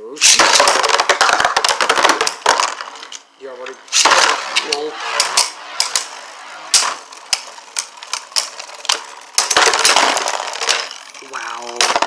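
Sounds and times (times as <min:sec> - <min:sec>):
tops rattling and scraping: 0:00.2 - 0:12.0
spinning tops hissing and clicking: 0:03.9 - 0:11.7.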